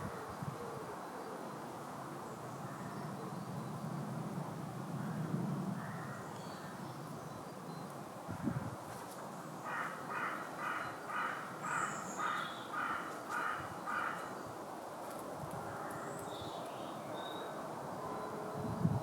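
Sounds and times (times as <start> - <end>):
bird calling: 9.7 - 14.4.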